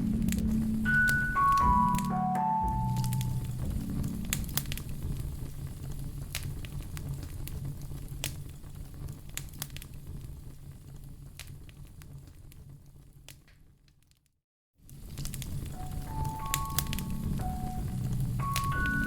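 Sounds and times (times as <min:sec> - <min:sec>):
low steady rumble: 0:00.0 - 0:01.9, 0:02.6 - 0:11.4
fire popping: 0:00.0 - 0:14.2, 0:14.8 - 0:19.0
wood fire crackling: 0:00.0 - 0:19.0.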